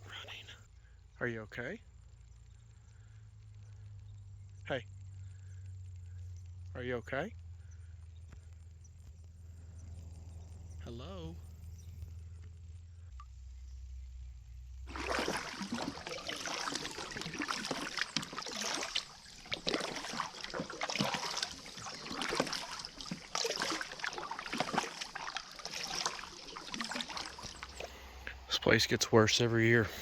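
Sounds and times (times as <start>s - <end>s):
splashing footsteps in shallow water: 14.9s - 28.4s
crackling footsteps in wet brush: 14.9s - 28.5s.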